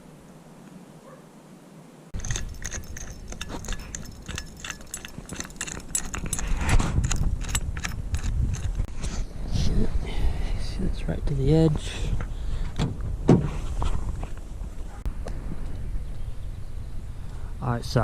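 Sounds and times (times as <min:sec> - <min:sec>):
metallic clinks and rattles: 0:02.2 - 0:08.9.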